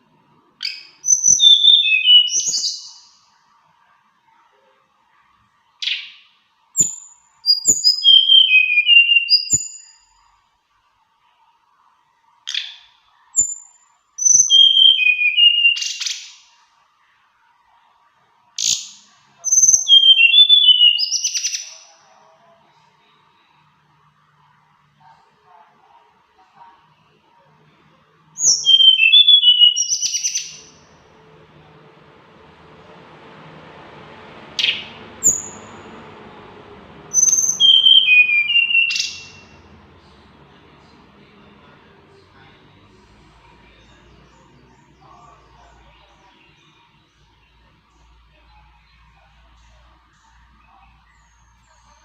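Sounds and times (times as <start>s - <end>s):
songbird singing: 0.0s - 3.4s, 5.8s - 10.2s, 12.5s - 16.6s, 18.6s - 23.7s, 28.3s - 52.0s
bird singing whistled notes: 0.6s - 3.3s, 6.8s - 10.2s, 12.5s - 16.5s, 18.6s - 22.0s, 28.4s - 31.0s, 34.6s - 36.1s, 37.1s - 39.8s.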